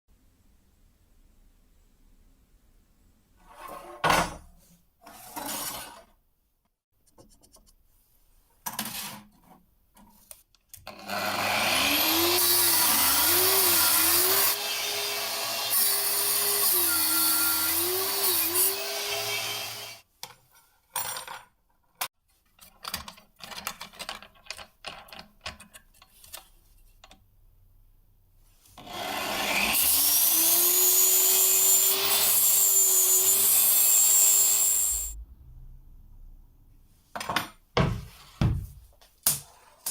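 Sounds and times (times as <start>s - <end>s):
electric power tool running: 28.8s - 35.2s.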